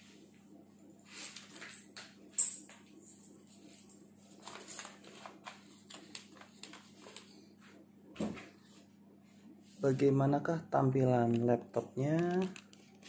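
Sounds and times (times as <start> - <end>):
steady low hum: 0.0 - 13.0
laptop clicks and rustles: 4.3 - 7.4, 11.1 - 13.0.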